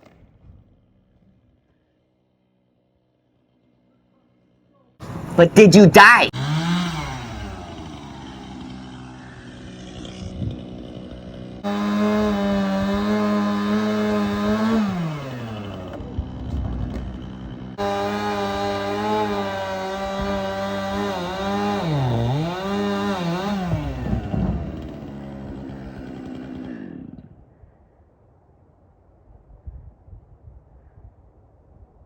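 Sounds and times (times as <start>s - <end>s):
chainsaw engine revving: 6.4s - 27.3s.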